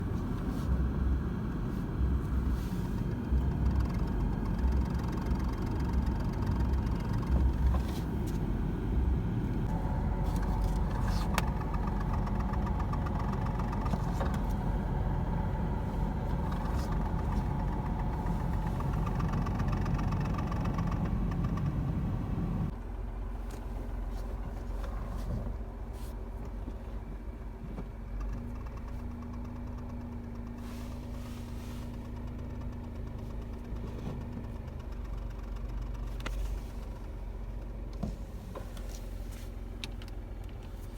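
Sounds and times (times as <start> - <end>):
low rumble: 0.0 - 22.8
car engine running: 0.0 - 40.9.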